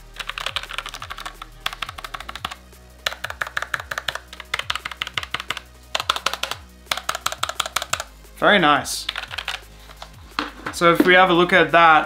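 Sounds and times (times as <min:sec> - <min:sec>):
fast typing on mechanical keyboard: 0:00.2 - 0:08.1, 0:09.1 - 0:09.7.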